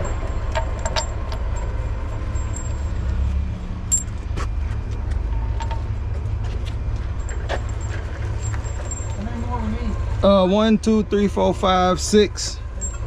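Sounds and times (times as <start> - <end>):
diesel engine idling: 0.0 - 13.0
metallic clinks of tools: 3.9 - 4.2.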